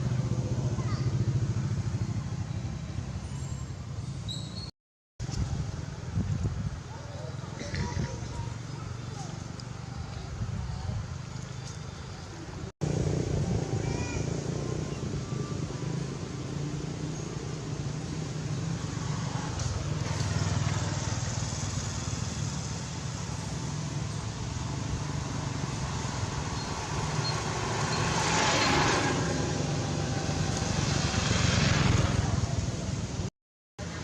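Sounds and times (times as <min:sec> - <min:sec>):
vehicles passing: 0:00.0 - 0:34.0
vehicle engine humming: 0:05.3 - 0:34.0.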